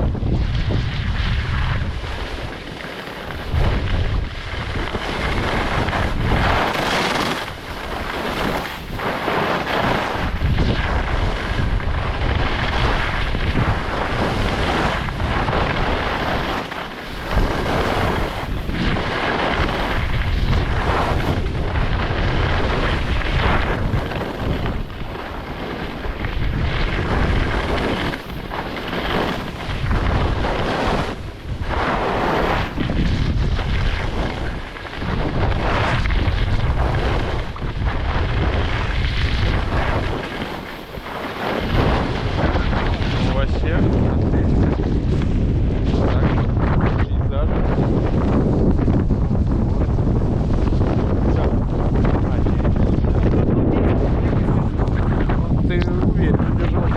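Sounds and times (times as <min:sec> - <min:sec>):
strong wind buffeting microphone: 0:00.0 - 0:56.9.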